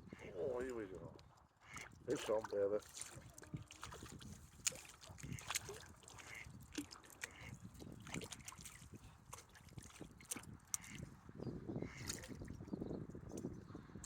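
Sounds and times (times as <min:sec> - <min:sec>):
light water splashing: 0:00.5 - 0:11.1, 0:11.9 - 0:12.6.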